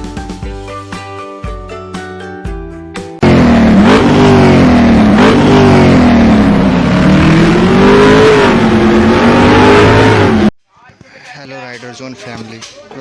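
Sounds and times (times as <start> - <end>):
engine revving: 3.2 - 10.6.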